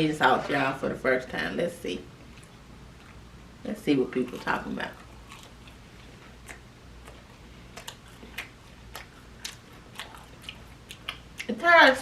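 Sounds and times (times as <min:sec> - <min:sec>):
mouth clicks and smacks chewing: 0:05.0 - 0:11.5.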